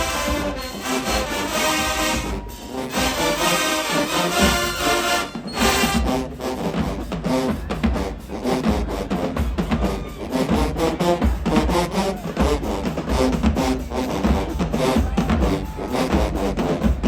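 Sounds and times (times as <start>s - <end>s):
sharp percussion hits: 0.0s - 9.9s
heavy low drum beat: 0.0s - 17.0s
marching band playing: 0.0s - 17.0s.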